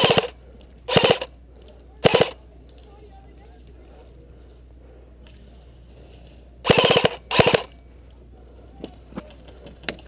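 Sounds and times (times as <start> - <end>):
airsoft rifle full-auto bursts: 0.0 - 1.3, 2.0 - 2.4, 6.6 - 7.8.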